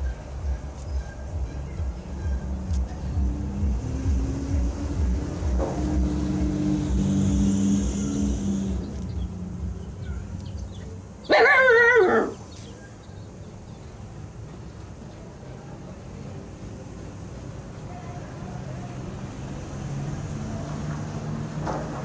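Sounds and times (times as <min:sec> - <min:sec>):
puppy howling: 0:11.3 - 0:12.4.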